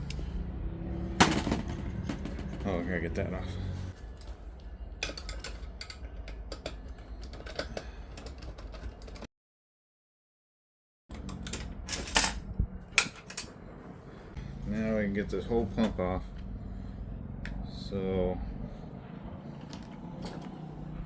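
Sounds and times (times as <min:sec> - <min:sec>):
hand tools clanking on metal parts: 0:01.2 - 0:03.3, 0:05.0 - 0:09.3.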